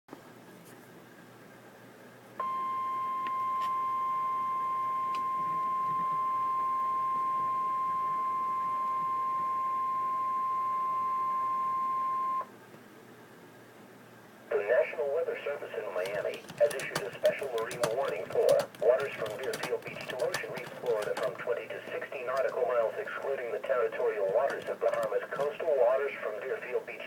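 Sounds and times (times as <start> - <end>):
steady warning beep: 2.4 - 12.5.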